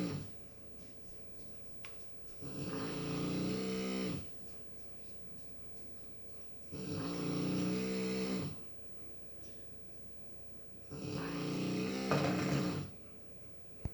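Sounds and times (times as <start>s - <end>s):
person snoring: 2.4s - 4.2s, 6.8s - 8.6s, 10.9s - 13.0s.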